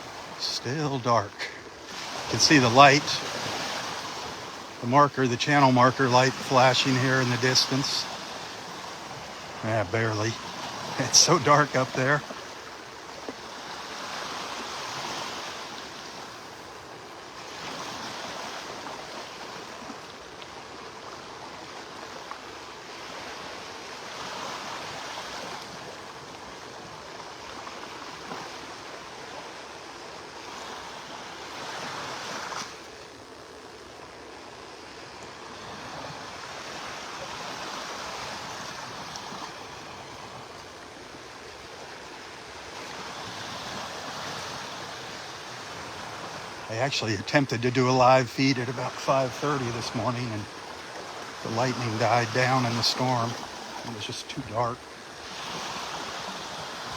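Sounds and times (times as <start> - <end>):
surf breaking on beach: 0.0 - 20.2, 34.6 - 56.9.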